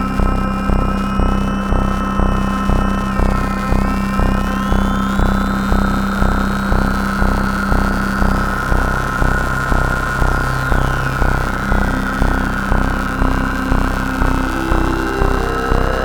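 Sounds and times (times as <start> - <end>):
low synthesizer pulse: 9.7 - 16.0
synthesizer drone: 10.4 - 16.0
high gliding synth tones: 12.7 - 16.0.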